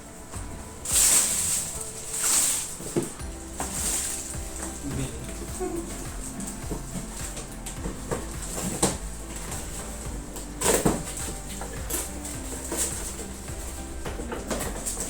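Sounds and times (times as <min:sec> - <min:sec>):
packaging rustling and crinkling: 0:00.1 - 0:15.0.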